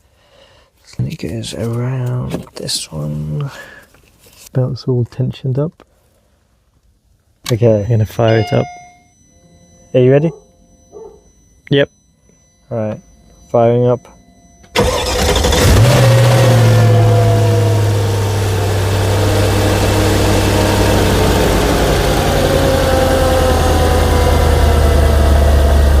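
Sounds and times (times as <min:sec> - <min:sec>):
car engine starting and idling: 0:14.4 - 0:26.0.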